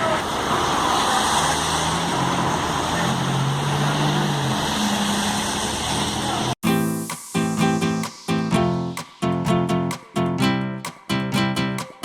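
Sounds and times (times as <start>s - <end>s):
street traffic: 0.0s - 6.6s
guitar music: 6.6s - 12.0s.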